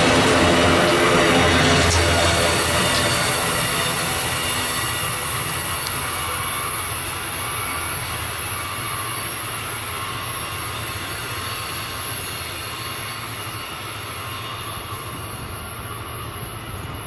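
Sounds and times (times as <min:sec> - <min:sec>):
train wheels rolling on track: 0:00.0 - 0:17.0.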